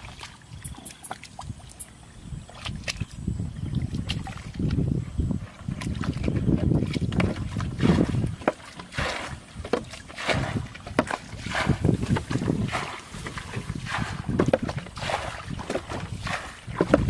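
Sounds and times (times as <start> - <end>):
water splashing and sloshing: 0.0 - 17.0
wind on microphone: 0.0 - 17.0.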